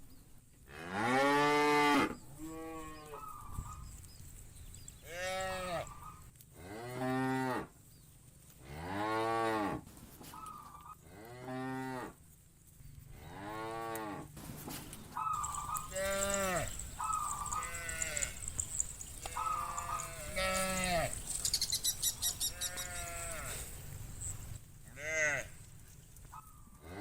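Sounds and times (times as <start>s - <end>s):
cows mooing: 5.1s - 7.7s, 15.3s - 25.7s
shorter higher calls: 15.2s - 24.5s.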